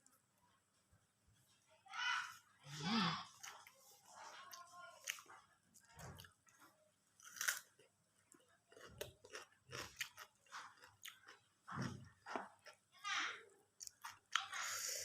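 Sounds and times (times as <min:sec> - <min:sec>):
person chewing crunchy food: 0:05.0 - 0:12.9, 0:13.8 - 0:14.5.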